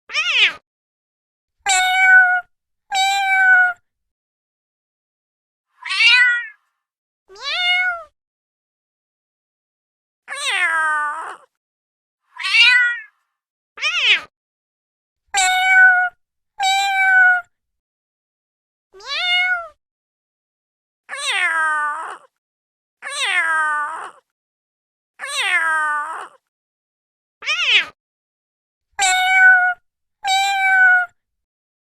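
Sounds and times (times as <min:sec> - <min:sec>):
cat meowing: 0:00.1 - 0:00.6, 0:01.7 - 0:03.8, 0:05.7 - 0:06.6, 0:07.3 - 0:08.2, 0:10.3 - 0:11.5, 0:12.3 - 0:13.2, 0:13.8 - 0:14.3, 0:15.3 - 0:17.5, 0:19.0 - 0:19.8, 0:21.1 - 0:22.3, 0:23.0 - 0:24.2, 0:25.2 - 0:26.4, 0:27.4 - 0:28.0, 0:29.0 - 0:31.2.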